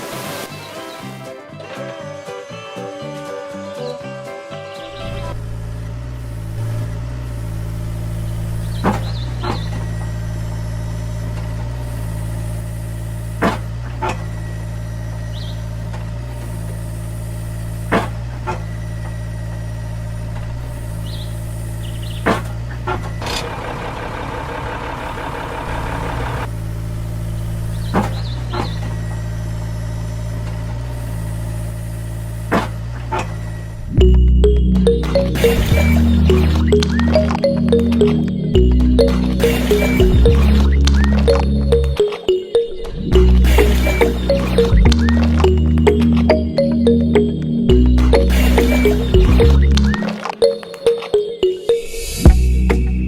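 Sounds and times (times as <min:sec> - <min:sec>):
engine idling: 0:19.0 - 0:34.7.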